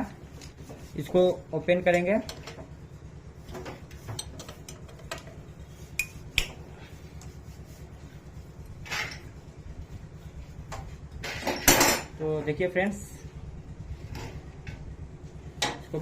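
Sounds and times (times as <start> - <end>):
steady low hum: 0.0 - 16.0
rasping scrape: 5.6 - 11.5.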